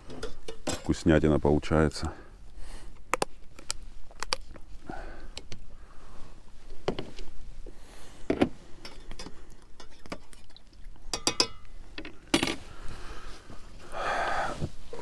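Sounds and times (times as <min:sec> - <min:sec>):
cups clinking and knocking: 0:11.1 - 0:12.6.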